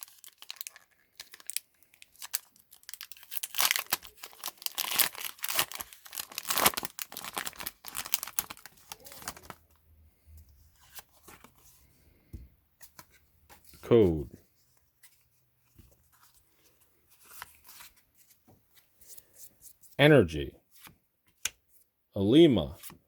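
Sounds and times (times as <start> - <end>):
foil wrapper torn and crinkled: 0.0 - 9.7.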